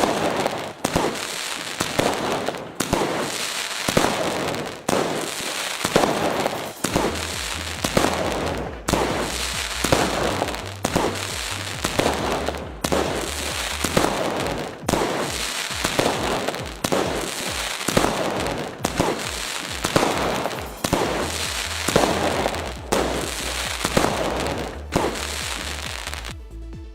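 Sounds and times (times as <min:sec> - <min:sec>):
fireworks shells bursting with crackling: 0:00.0 - 0:26.4
background music with bass line: 0:06.4 - 0:26.9.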